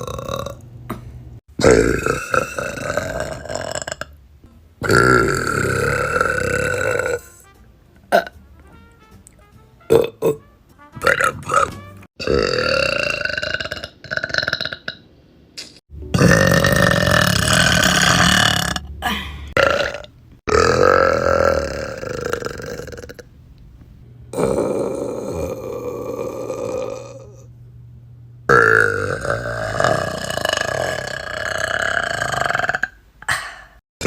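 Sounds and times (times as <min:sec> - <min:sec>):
women burping: 0:16.2 - 0:23.2.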